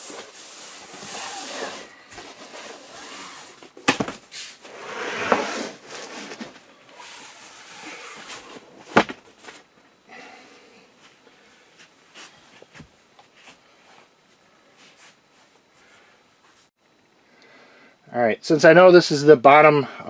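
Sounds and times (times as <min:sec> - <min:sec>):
handling rustling and scraping: 0:00.0 - 0:09.8.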